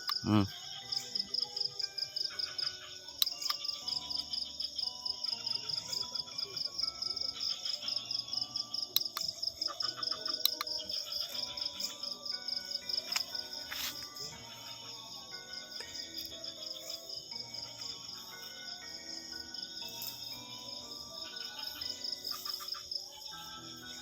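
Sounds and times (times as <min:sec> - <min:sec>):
crickets trilling: 0:00.0 - 0:24.0
sharp clicks: 0:10.4 - 0:10.8.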